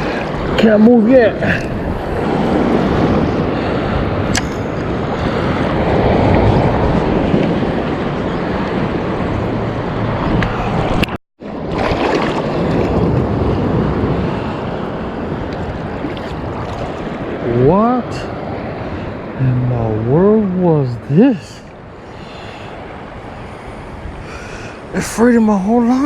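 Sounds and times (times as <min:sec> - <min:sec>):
surf breaking on beach: 0:00.0 - 0:26.0
wind buffeting microphone: 0:00.0 - 0:26.0.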